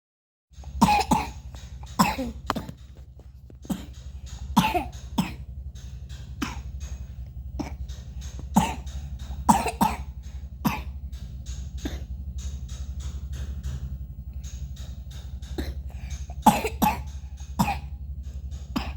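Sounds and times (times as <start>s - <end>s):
low steady hum: 0.6s - 18.9s
child coughing: 0.7s - 2.8s, 3.6s - 5.5s, 6.4s - 6.7s, 7.6s - 7.9s, 8.6s - 11.0s, 11.8s - 12.1s, 15.6s - 18.0s.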